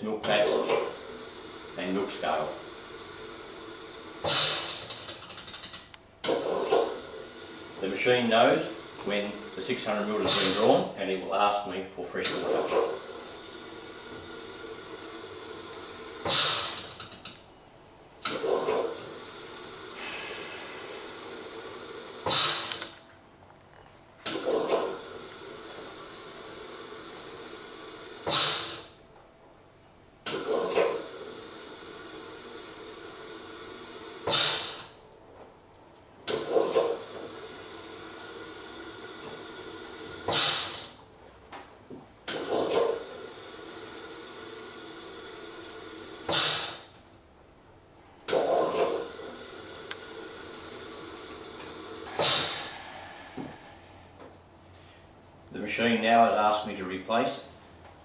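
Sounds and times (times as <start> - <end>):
coffee machine running hum: 0.0 - 11.4, 12.2 - 29.1, 30.2 - 55.4
steady background noise: 0.0 - 58.0
milk foamer pulsing: 0.2 - 5.6, 6.2 - 11.0, 12.2 - 17.2, 18.2 - 22.9, 24.2 - 29.0, 30.3 - 35.0, 36.3 - 41.0, 42.3 - 46.9, 48.3 - 53.9
short liquid spurts: 6.2 - 7.2, 9.0 - 10.9
watery burst: 8.6 - 10.9, 12.4 - 16.9, 18.3 - 22.8, 24.3 - 29.0, 30.4 - 35.0, 36.3 - 41.0, 42.3 - 46.9, 48.3 - 54.1
sharp hiss: 19.9 - 22.9, 46.3 - 46.9, 51.9 - 54.2.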